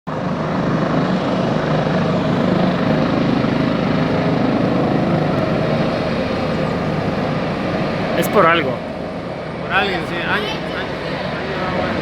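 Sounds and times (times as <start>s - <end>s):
helicopter rotor and engine: 0.1s - 12.0s.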